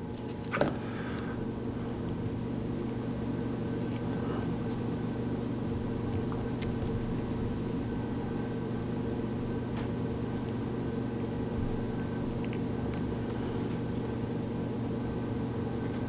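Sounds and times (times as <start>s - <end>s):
appliance humming: 0.0s - 16.0s
light clicks of small parts: 3.8s - 4.8s.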